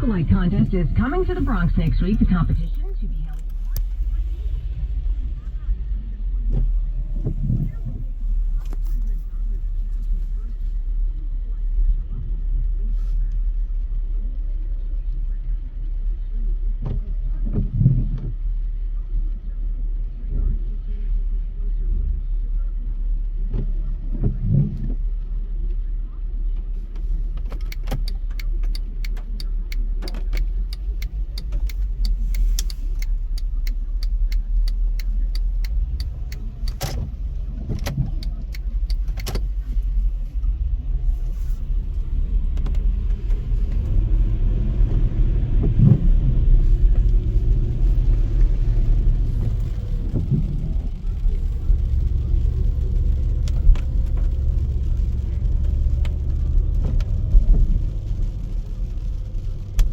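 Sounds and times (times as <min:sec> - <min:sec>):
road and engine rumble in car: 0:00.0 - 0:59.9
quick sharp clicks: 0:27.5 - 0:37.1, 0:37.8 - 0:39.5.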